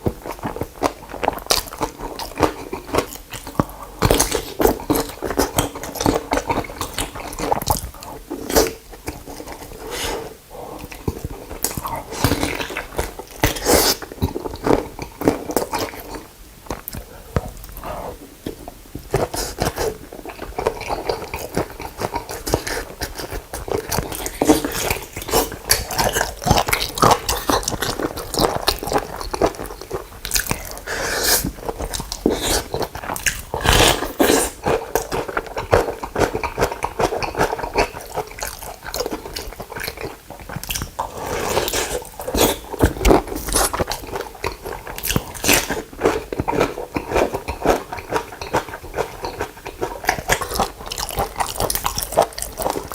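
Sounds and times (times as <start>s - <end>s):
wet chewing and smacking: 0.0s - 9.9s, 10.8s - 52.9s
crackly crunches: 18.5s - 52.9s.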